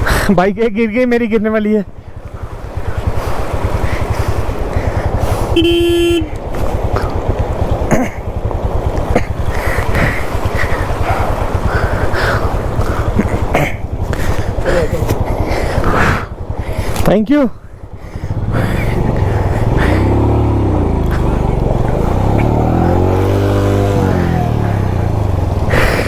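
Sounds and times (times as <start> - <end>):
motorcycle engine running: 1.2 - 26.0
vehicle horn honk: 5.5 - 6.4.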